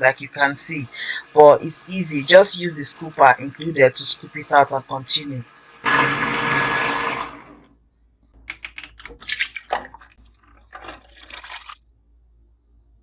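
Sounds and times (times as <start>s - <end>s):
liquid dripping: 8.5s - 11.9s
liquid pouring and splashing: 8.6s - 11.9s.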